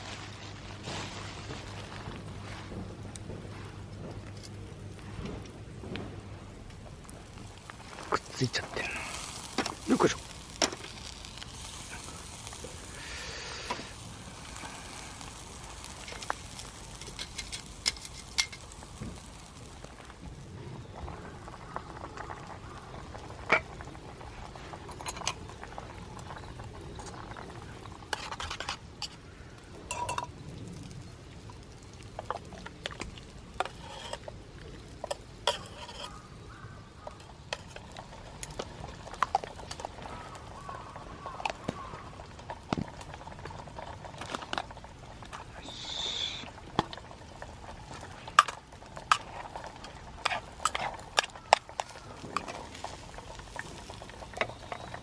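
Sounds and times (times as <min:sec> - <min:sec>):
utensils clinking against metal pots: 0:17.0 - 0:18.6, 0:29.9 - 0:30.3, 0:35.0 - 0:36.2.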